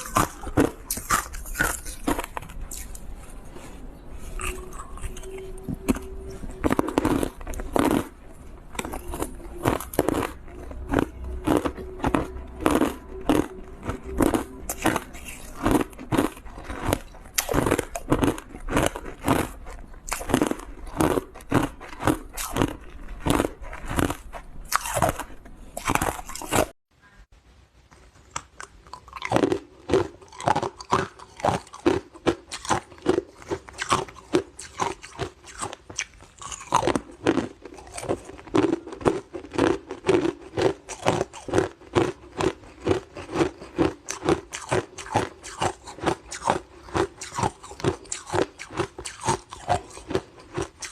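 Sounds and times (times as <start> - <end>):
crunching and chewing frozen ice: 0.0 - 26.8, 28.2 - 50.9.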